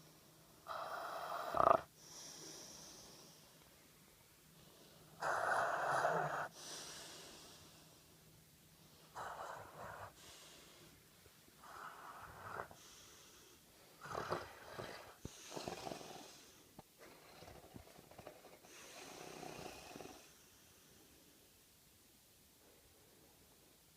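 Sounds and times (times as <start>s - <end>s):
dog snoring: 0.6s - 2.9s, 5.2s - 7.4s, 9.1s - 10.4s, 11.6s - 20.4s.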